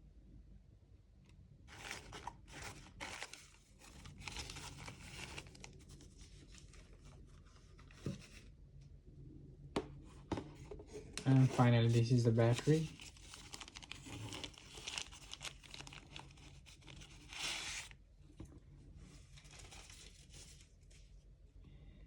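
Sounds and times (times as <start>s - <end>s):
packaging rustling and tearing: 1.7s - 8.4s, 11.2s - 18.0s, 19.3s - 20.7s.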